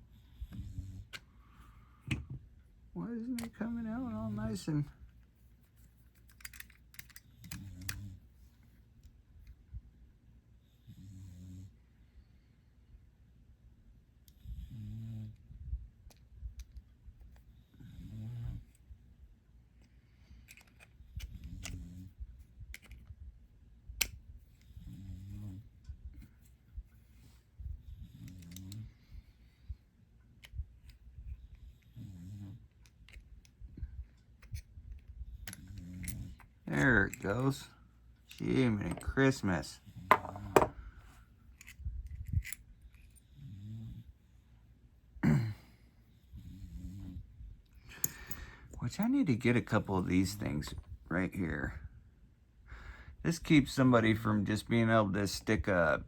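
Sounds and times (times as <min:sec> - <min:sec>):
padlock parts clicking and clinking: 0:05.8 - 0:08.1, 0:19.8 - 0:21.8, 0:22.6 - 0:23.1, 0:28.2 - 0:28.8, 0:32.7 - 0:37.6, 0:40.1 - 0:40.8, 0:41.5 - 0:43.2, 0:47.9 - 0:48.4
metal tools clicking on padlock: 0:06.1 - 0:08.1.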